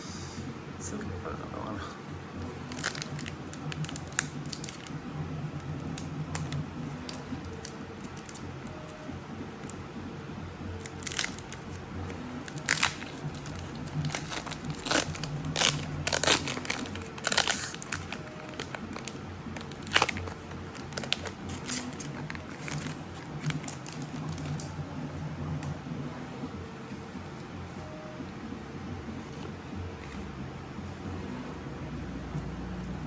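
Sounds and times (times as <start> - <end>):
foil wrapper crinkling and tearing: 2.6 - 5.0, 10.8 - 11.8, 12.4 - 24.7.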